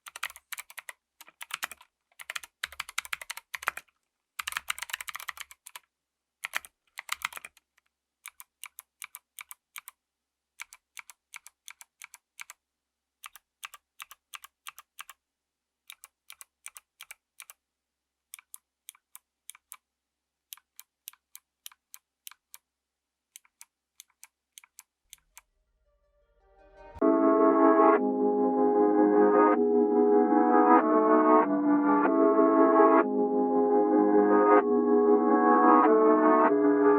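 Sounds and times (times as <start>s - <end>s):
clicky keyboard typing: 0.0s - 5.8s, 6.4s - 10.0s, 10.6s - 12.6s, 13.2s - 15.2s, 15.9s - 17.6s, 18.4s - 19.8s, 23.4s - 25.5s
ambient music sustained chords: 26.0s - 36.9s.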